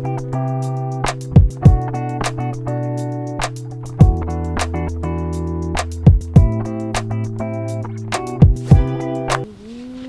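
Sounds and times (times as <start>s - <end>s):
music with chords and bass: 0.0s - 9.5s
drum beat: 1.0s - 2.5s, 3.4s - 5.0s, 5.8s - 9.4s
heavy low drum hits: 1.4s - 1.9s, 4.0s - 4.3s, 6.1s - 6.6s, 8.4s - 9.0s.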